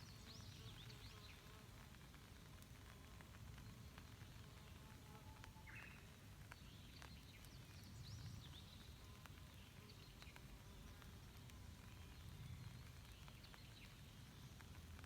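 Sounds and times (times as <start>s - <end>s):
light rain dripping: 0.0s - 15.0s.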